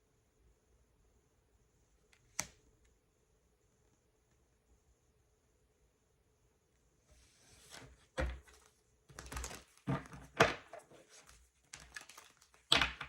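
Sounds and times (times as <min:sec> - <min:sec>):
cards rustling: 0:07.6 - 0:13.0
cards shuffled and set down: 0:07.6 - 0:13.0.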